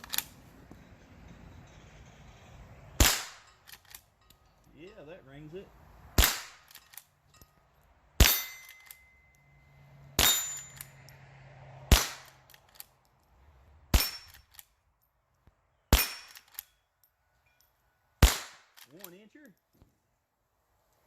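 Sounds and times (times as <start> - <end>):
steel targets ringing: 0.8 - 5.6, 7.2 - 11.0, 14.0 - 14.4
rifle shots: 3.0 - 3.4, 6.2 - 6.7, 11.9 - 12.4, 18.2 - 18.8.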